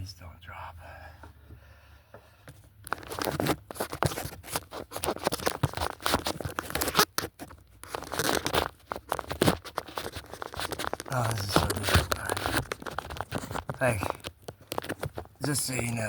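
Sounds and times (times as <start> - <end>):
rustling and crinkling: 2.3 - 16.0.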